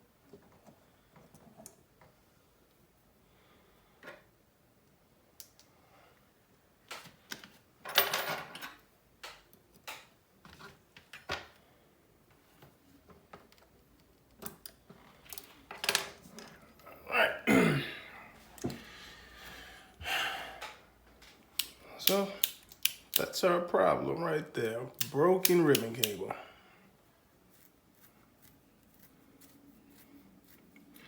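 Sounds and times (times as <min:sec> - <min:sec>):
person sighing: 0:16.9 - 0:20.8
hand tools clicking on phone frame: 0:21.6 - 0:23.3, 0:25.0 - 0:26.2.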